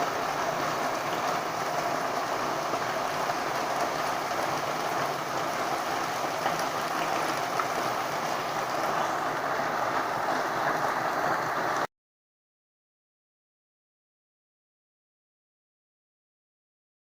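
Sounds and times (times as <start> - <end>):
heavy rain falling: 0.0 - 11.9.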